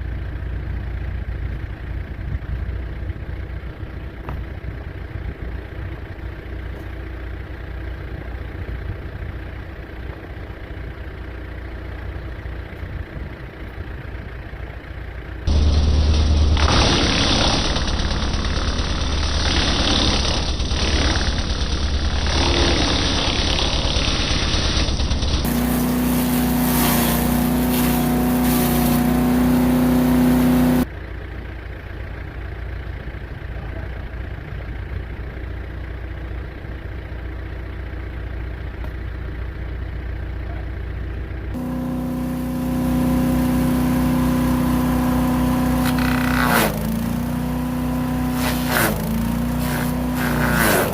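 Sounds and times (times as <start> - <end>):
engine hum: 0.0 - 50.9
wood chipper grinding: 15.4 - 30.9, 41.5 - 50.9.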